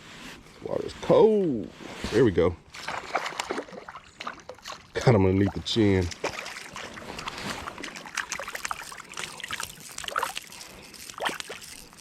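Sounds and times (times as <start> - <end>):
water trickling and sloshing: 2.6 - 12.0
small water splashes: 2.7 - 12.0.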